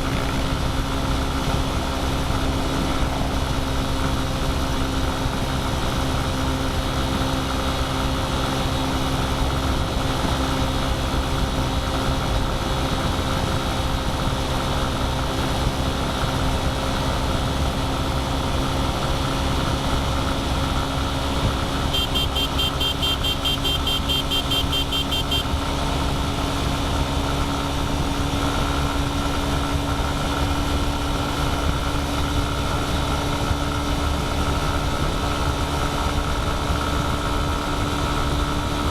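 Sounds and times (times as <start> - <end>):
vehicle engine and road noise: 0.0 - 38.9
rapid high beeps: 21.9 - 25.5.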